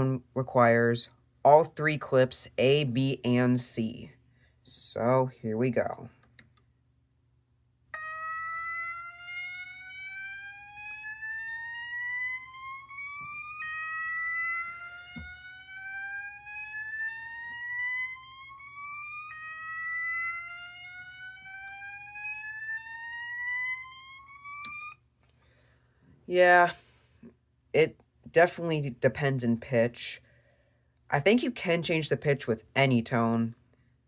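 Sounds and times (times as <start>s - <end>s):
fire alarm horn slow whoop tone: 8.0s - 25.1s.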